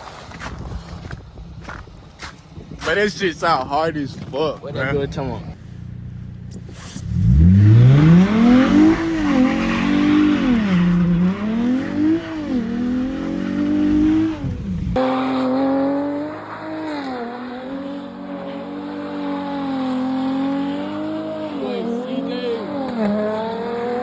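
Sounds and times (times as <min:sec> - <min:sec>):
car engine revving: 0:04.8 - 0:24.0.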